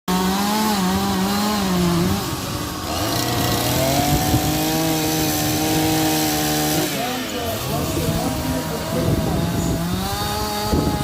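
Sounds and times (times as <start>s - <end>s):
chainsaw engine revving: 0.1s - 11.0s.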